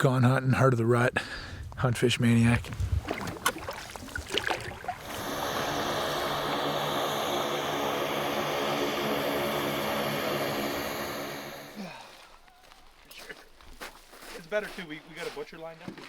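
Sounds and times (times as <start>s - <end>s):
propeller aircraft engine droning: 5.0s - 12.1s.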